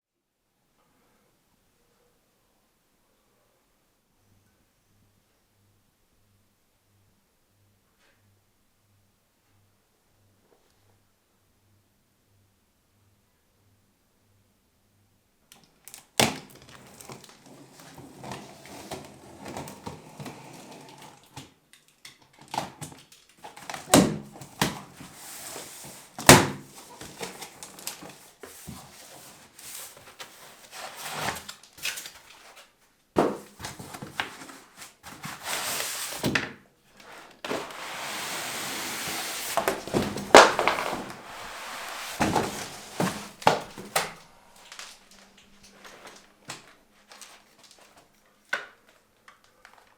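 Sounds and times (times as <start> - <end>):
cardboard box being opened: 16.6 - 21.3, 33.2 - 36.3, 37.0 - 44.9.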